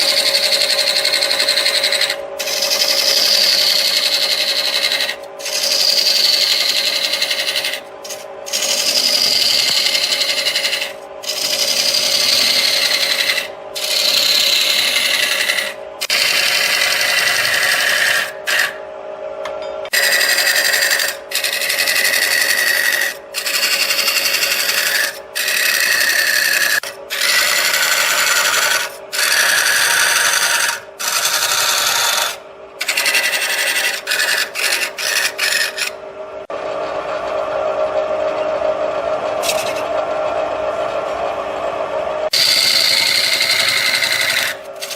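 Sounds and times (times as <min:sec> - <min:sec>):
turning tool scraping wood: 0:00.0 - 0:18.8, 0:19.9 - 0:36.0, 0:39.4 - 0:39.9, 0:42.3 - 0:44.9
wood lathe humming: 0:00.0 - 0:18.9, 0:19.9 - 0:36.0, 0:42.3 - 0:44.9.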